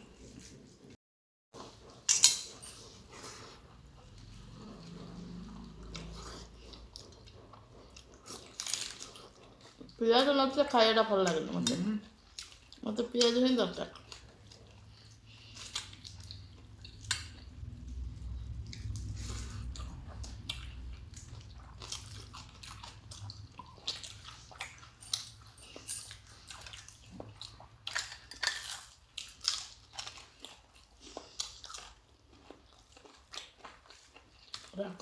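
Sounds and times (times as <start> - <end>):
chewing with crisp crunches: 1.6 - 10.5, 11.1 - 35.0
low hum: 15.6 - 26.2.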